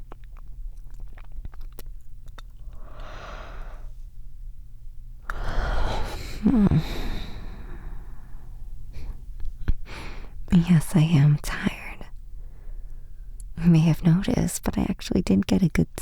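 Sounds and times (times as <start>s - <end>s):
wet mouth clicks: 0.0s - 3.1s
woman breathing: 2.7s - 4.0s, 5.2s - 10.4s, 12.3s - 13.4s
woman yawning: 5.3s - 7.6s.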